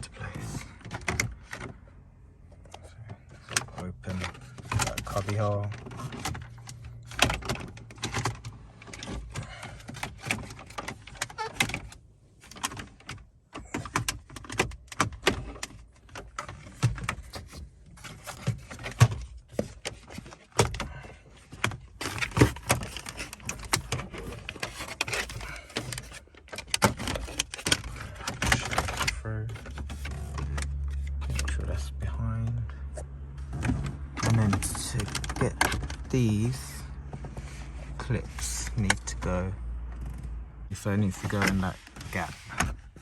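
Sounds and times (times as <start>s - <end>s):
plastic trim clicking and rattling: 3.4s - 31.8s, 33.5s - 36.4s.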